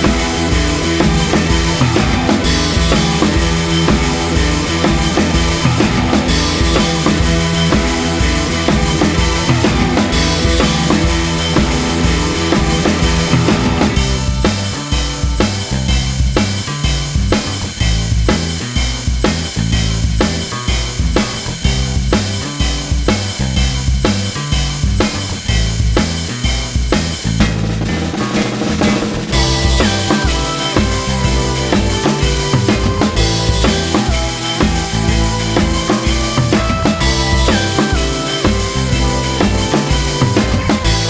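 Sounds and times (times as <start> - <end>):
background music with drums: 0.0 - 41.0.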